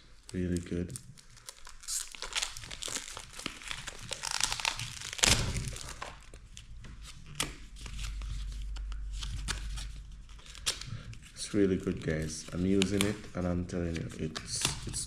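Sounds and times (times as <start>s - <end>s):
packaging crinkling and rustling: 0.0s - 15.0s
loud tearing rip: 1.6s - 6.2s.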